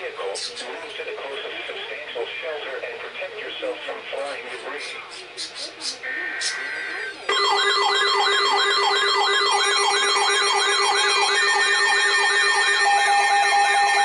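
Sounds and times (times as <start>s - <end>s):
steady high tones: 6.4s - 14.0s
electronic siren sweep: 7.3s - 14.0s.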